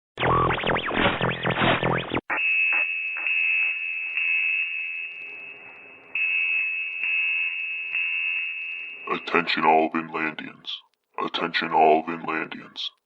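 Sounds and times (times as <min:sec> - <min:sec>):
electronic music: 0:00.2 - 0:02.9.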